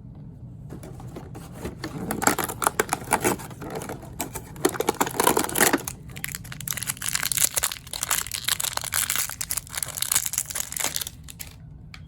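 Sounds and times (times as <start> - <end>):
packaging crinkling and crackling: 0.7 - 11.6.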